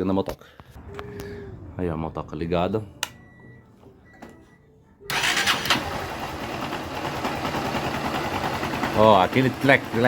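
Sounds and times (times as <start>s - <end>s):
motorcycle engine starting and idling: 5.1s - 10.0s.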